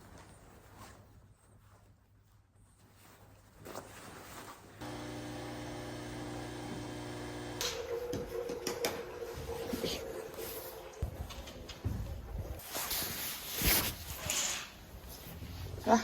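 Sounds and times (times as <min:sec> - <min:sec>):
small machine humming: 0:04.8 - 0:07.9.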